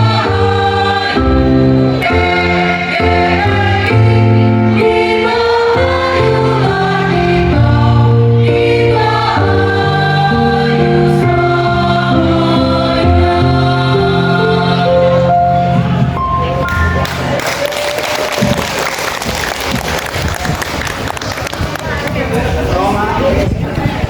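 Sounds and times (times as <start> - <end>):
choir singing chords: 0.0 - 17.4.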